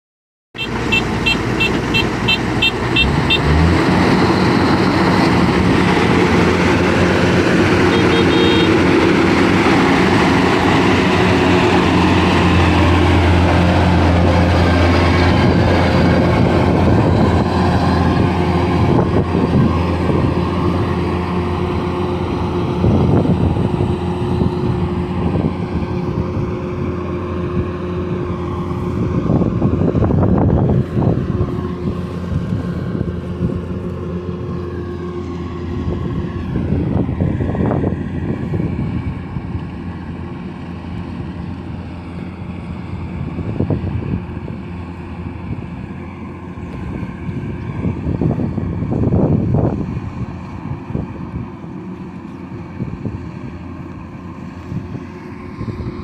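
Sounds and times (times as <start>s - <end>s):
combine harvester engine running: 0.6s - 56.0s
short high beeps: 7.9s - 8.7s.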